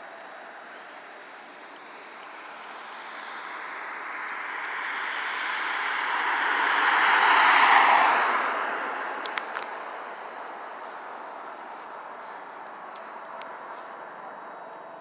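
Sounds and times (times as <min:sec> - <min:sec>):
vehicle passing at speed: 0:00.8 - 0:15.0
sharp clicks: 0:01.4 - 0:05.4.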